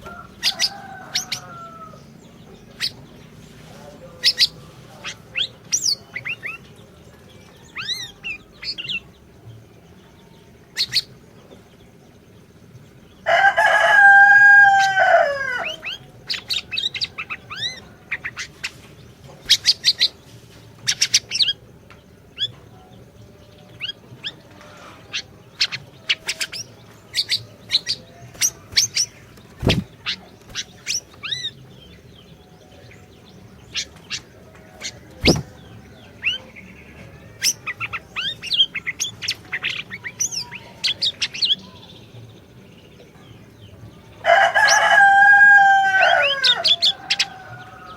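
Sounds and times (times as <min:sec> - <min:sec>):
rooster crowing: 0:00.0 - 0:02.2, 0:13.2 - 0:16.0, 0:44.2 - 0:47.9
songbird chirping and trilling: 0:00.0 - 0:47.9.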